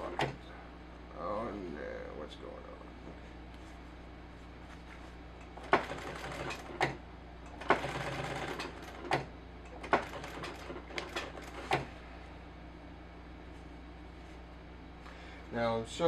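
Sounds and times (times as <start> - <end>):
sewing machine stitching: 5.6 - 7.0, 7.6 - 11.9
sewing machine clunk: 7.6 - 11.9.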